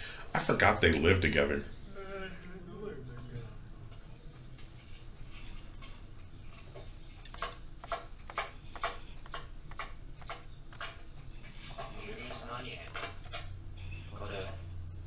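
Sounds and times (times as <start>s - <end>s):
steady low hum: 0.0s - 15.0s
light evenly spaced clicks: 3.2s - 15.0s.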